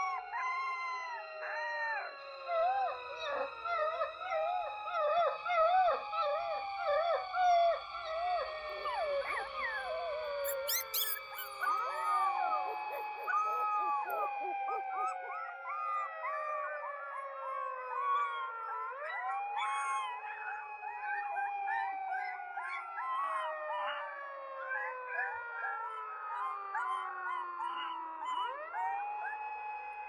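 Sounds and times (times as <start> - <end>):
dogs howling: 2.5 - 30.0
dogs yelping: 8.9 - 15.8.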